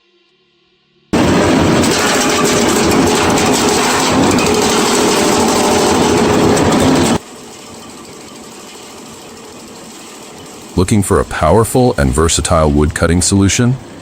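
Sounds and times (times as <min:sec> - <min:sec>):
machine engine running: 0:01.2 - 0:14.0.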